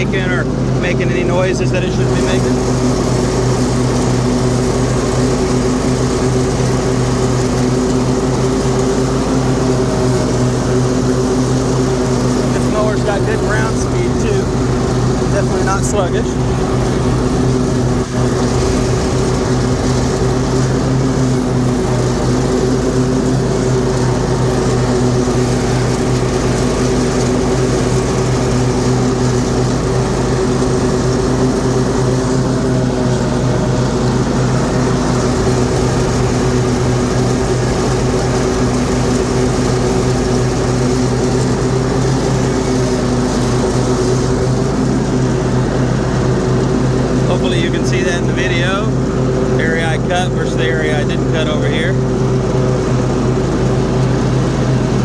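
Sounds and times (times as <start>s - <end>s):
mower engine running: 0.0s - 55.0s.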